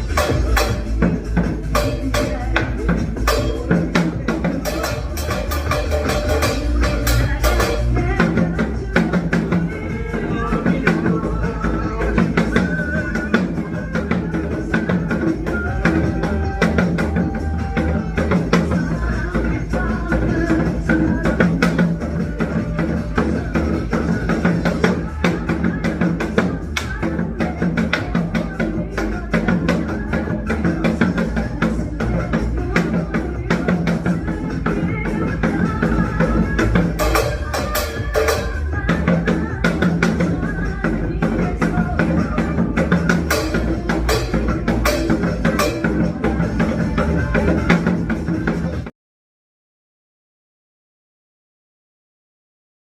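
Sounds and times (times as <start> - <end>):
pop song with drum beat: 0.0 - 48.9.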